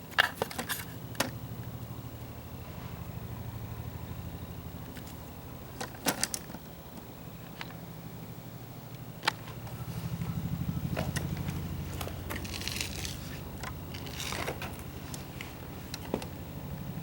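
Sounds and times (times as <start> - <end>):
clicks and rattles: 0.0 - 1.4, 5.8 - 7.8
engine cranking by starter: 3.7 - 17.0.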